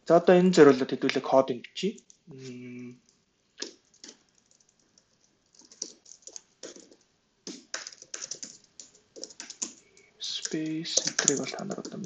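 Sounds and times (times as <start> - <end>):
computer keyboard typing: 1.9 - 2.2, 3.6 - 12.0.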